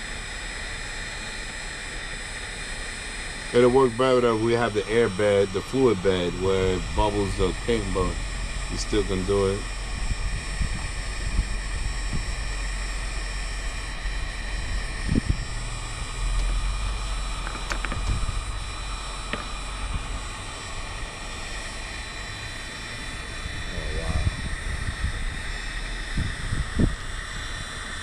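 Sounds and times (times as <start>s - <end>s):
heating tool blowing whir: 0.0s - 28.0s.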